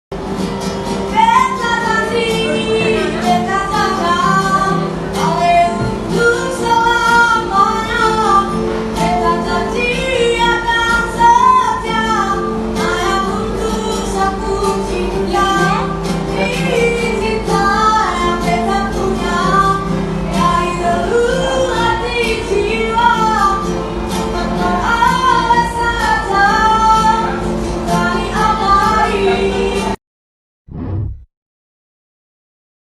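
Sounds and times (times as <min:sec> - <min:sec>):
person singing with vibrato: 0:01.1 - 0:23.7.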